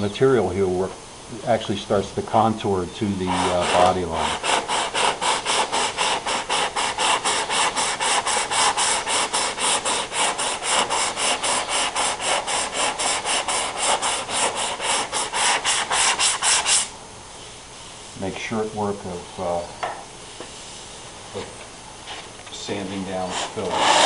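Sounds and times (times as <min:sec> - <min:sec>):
sandpaper rasping on filler: 0:03.2 - 0:16.9, 0:22.7 - 0:24.0.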